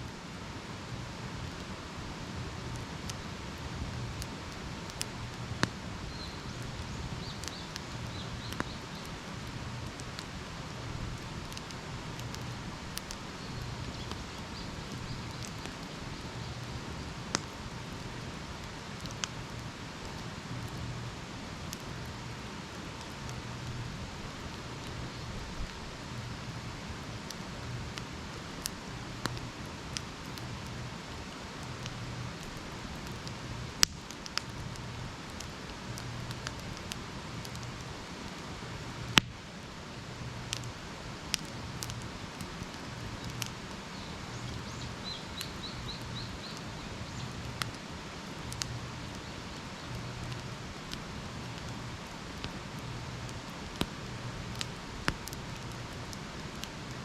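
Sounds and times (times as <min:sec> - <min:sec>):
campfire crackling: 0:00.0 - 0:57.0
sharp pops of fire: 0:06.5 - 0:10.4, 0:17.2 - 0:20.2, 0:27.3 - 0:37.8, 0:39.1 - 0:39.4, 0:40.5 - 0:52.6, 0:53.3 - 0:57.0.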